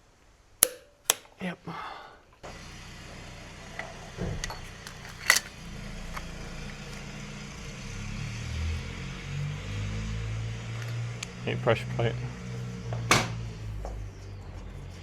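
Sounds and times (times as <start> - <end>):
metal tool clicking on bolts: 0.6 - 1.4, 4.8 - 6.2.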